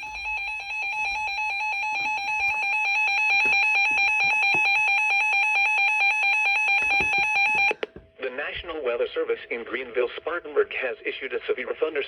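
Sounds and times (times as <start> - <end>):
electronic alarm tone: 0.0 - 7.8.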